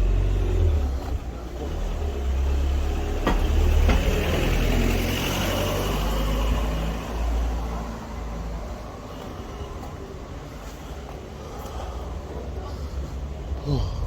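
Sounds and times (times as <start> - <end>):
vehicle passing by: 0.0 - 11.1.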